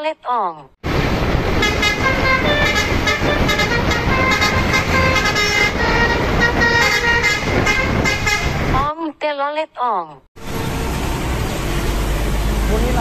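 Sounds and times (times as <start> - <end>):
bus rumbling on the road: 0.1 - 9.0, 10.4 - 13.0
multi-tone air horn melody: 1.5 - 8.6.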